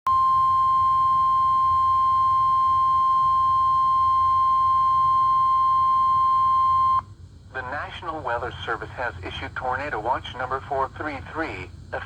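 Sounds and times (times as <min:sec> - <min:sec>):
steady loud alarm tone: 0:00.1 - 0:07.0.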